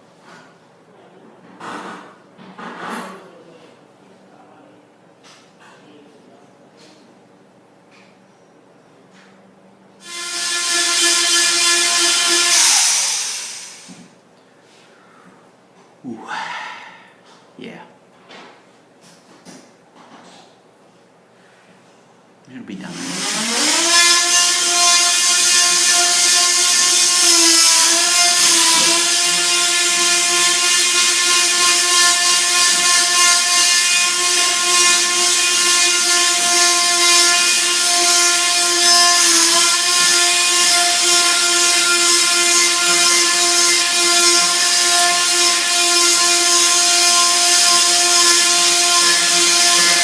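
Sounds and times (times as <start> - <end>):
power tool cutting wood: 10.0 - 14.0, 22.8 - 50.0.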